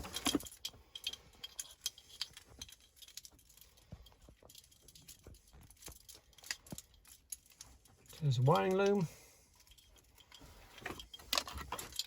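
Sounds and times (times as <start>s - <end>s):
small parts clicking and rattling: 0.0s - 12.0s.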